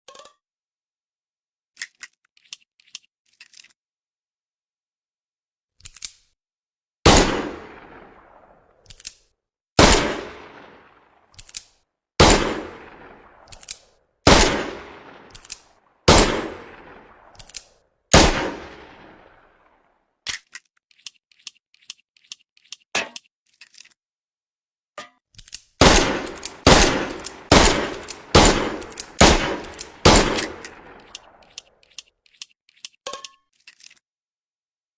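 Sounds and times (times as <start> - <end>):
light gun clicks: 13.4 - 13.9, 15.2 - 15.8, 17.2 - 17.7, 25.4 - 33.0.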